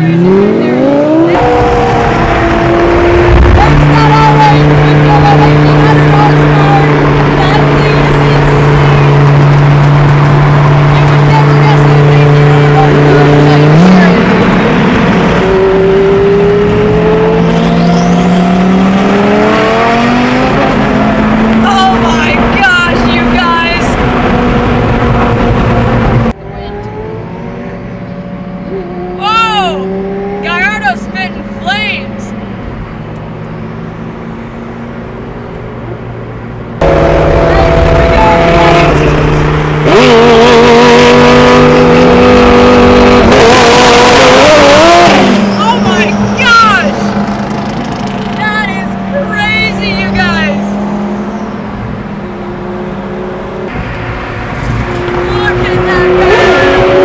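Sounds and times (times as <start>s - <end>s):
loud rush of noise: 0.0s - 27.3s, 53.2s - 57.0s
car engine accelerating: 0.0s - 57.0s.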